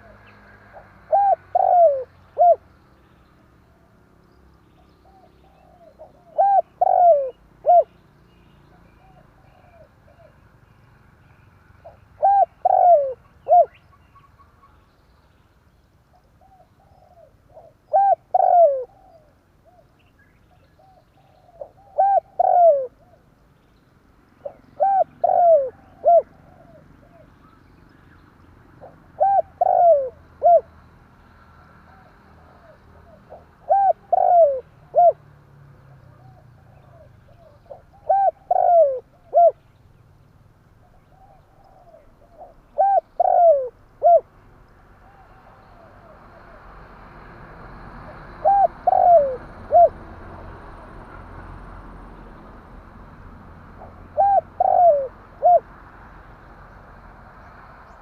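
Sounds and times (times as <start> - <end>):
dove cooing: 0.0 - 2.7, 5.0 - 7.9, 9.0 - 10.4, 11.8 - 13.8, 16.2 - 19.9, 20.8 - 23.2, 24.4 - 27.3, 28.8 - 30.7, 31.9 - 35.3, 36.0 - 39.6, 40.8 - 44.3, 48.1 - 50.2, 53.8 - 55.7.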